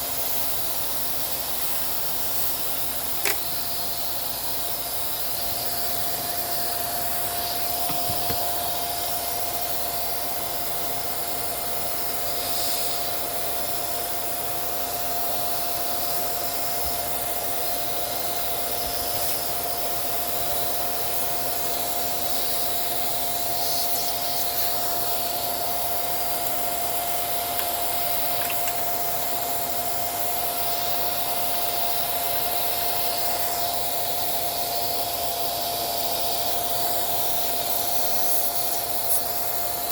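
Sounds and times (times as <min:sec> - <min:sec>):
small vacuum cleaner running: 0:00.0 - 0:39.9.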